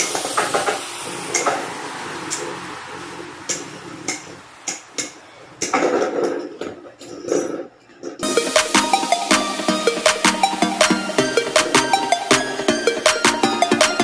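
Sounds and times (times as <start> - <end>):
faint hiss: 0.0 - 6.0.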